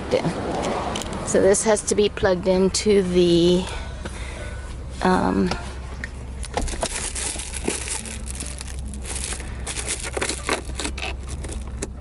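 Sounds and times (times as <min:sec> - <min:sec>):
rustling and crinkling handling: 0:06.4 - 0:12.0.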